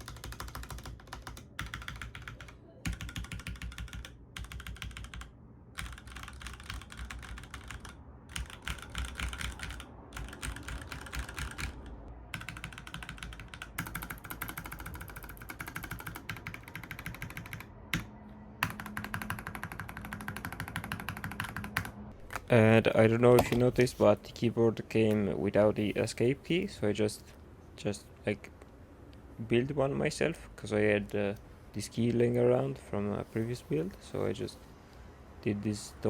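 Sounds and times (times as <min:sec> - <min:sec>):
mechanical keyboard typing: 0:00.0 - 0:22.0.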